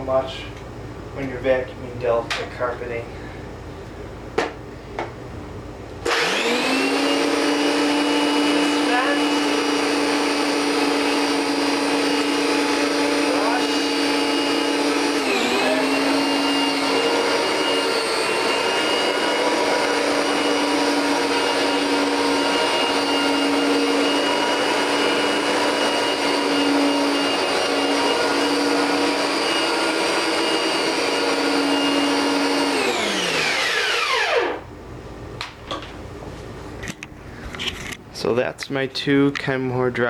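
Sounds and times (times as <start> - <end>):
motor winding down: 6.0 - 34.6
vacuum cleaner whining: 6.0 - 34.7.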